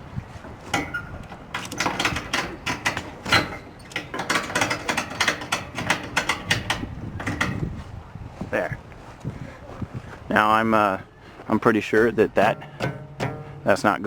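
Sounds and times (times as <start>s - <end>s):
ratchet strap clicking and rattling: 0.5s - 7.8s.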